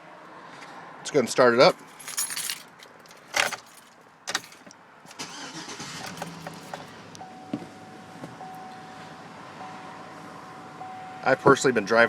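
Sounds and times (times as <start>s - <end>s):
car engine starting and idling: 1.7s - 7.3s.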